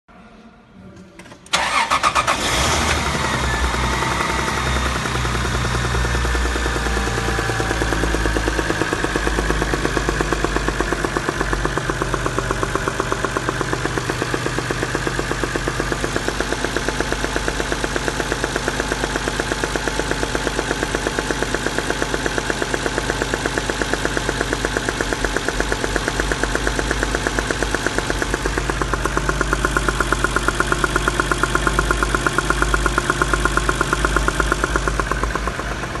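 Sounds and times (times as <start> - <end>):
car engine idling: 1.5 - 36.0
fast regular engine knock: 3.5 - 36.0.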